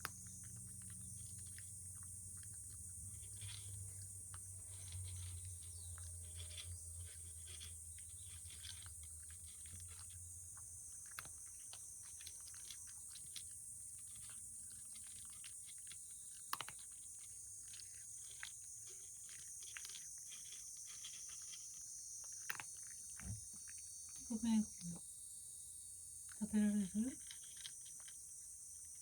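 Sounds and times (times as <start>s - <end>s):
cat chewing clicks: 10.8s - 23.3s.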